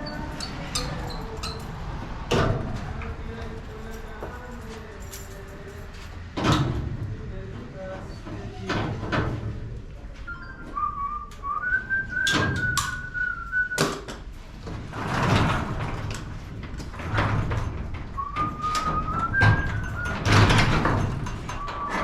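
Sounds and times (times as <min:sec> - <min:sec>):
person whistling a tune: 0:10.3 - 0:14.0, 0:18.2 - 0:20.2, 0:21.5 - 0:22.0
knocks and clatter of hand work: 0:13.8 - 0:22.0.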